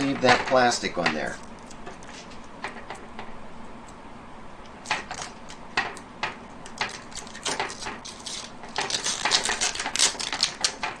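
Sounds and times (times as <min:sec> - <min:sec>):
plastic wrapping crinkling: 0:06.8 - 0:11.0.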